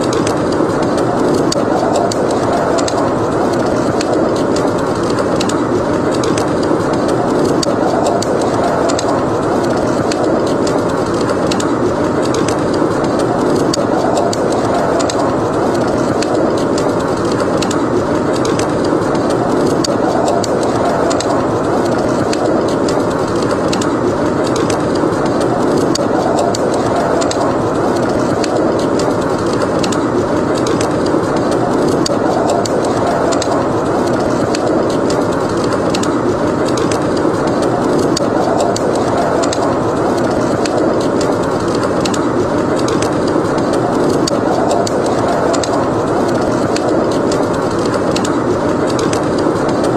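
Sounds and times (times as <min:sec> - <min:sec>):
blizzard wind: 0:00.0 - 0:49.9
fireplace crackling: 0:00.0 - 0:49.9.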